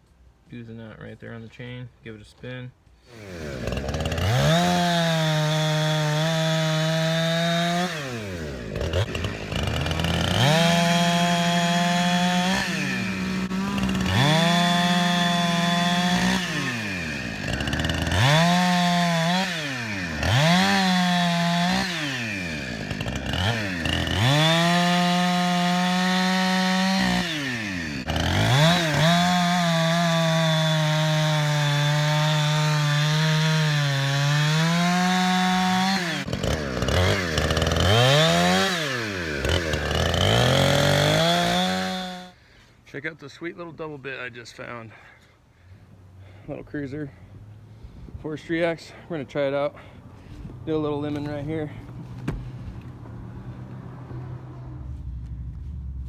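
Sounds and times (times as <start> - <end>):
chainsaw revving: 3.1 - 42.4.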